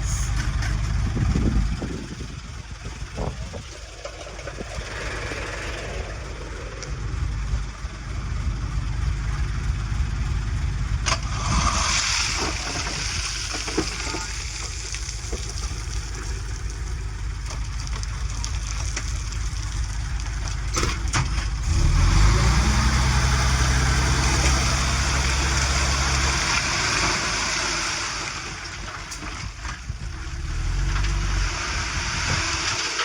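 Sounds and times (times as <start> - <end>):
heavy machinery diesel engine: 0.0 - 33.0
steady rushing noise: 3.0 - 8.6.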